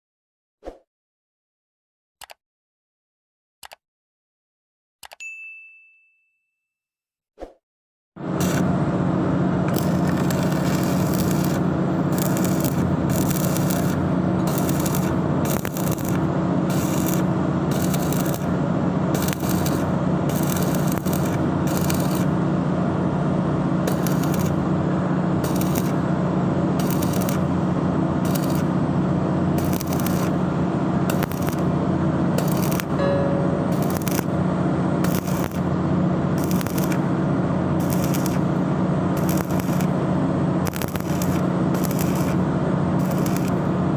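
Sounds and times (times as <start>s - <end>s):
low hum: 8.2s - 43.9s
welding arc crackling: 8.3s - 8.8s, 9.6s - 22.4s, 23.8s - 33.0s, 33.7s - 43.7s.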